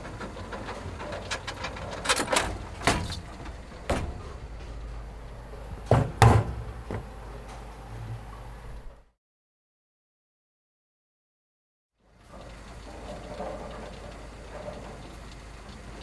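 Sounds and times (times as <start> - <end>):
steady low hum: 0.0 - 9.1
knocks and clicks: 0.5 - 5.1, 5.7 - 7.6.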